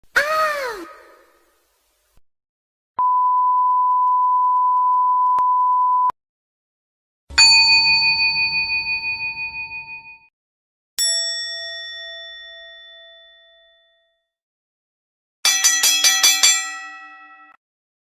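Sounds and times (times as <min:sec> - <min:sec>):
bell-like ding: 0:07.3 - 0:10.3, 0:15.5 - 0:17.6.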